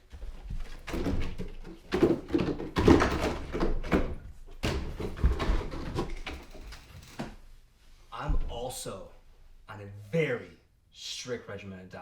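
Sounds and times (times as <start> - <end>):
containers knocking in a fridge: 0.8 - 6.4.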